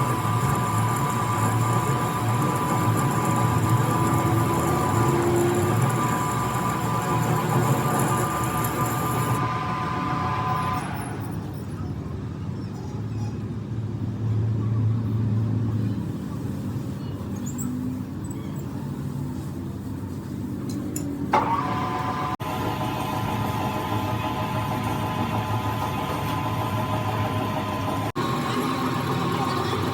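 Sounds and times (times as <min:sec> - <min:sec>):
high whine: 0:00.0 - 0:11.3
machinery rumbling: 0:00.0 - 0:11.6, 0:23.5 - 0:29.9.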